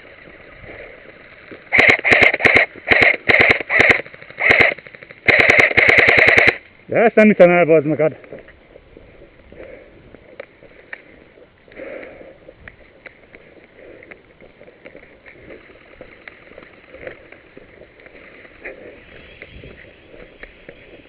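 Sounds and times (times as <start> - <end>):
small clicks: 1.4 - 6.8
footsteps: 8.1 - 21.0.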